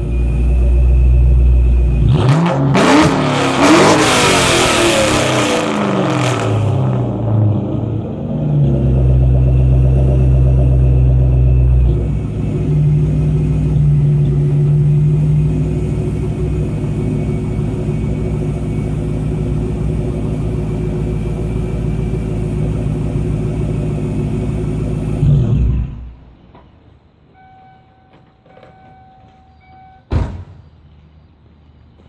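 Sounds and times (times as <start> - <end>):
car engine deep exhaust note: 0.0 - 26.2.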